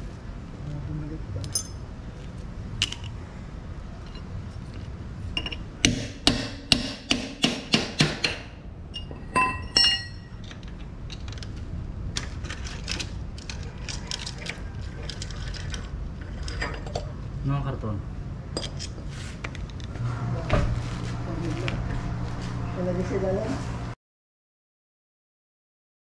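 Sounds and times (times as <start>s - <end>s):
ringing metallic clinks: 1.4s - 1.8s, 8.9s - 10.4s
hand tools striking metal: 5.4s - 10.4s.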